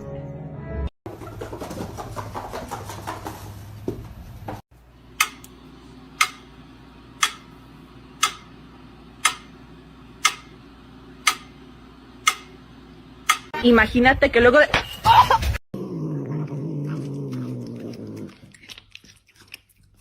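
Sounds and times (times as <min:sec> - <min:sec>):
clock ticking: 0:08.2 - 0:08.5, 0:09.2 - 0:09.6.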